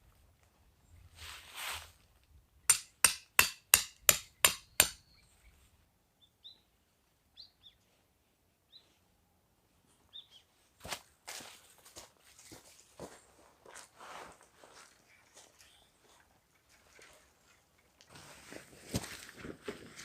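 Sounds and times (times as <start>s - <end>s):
hammer blows with metallic ring: 2.7s - 5.2s
faint bird chirps: 5.0s - 7.9s, 10.0s - 10.5s, 15.1s - 16.2s.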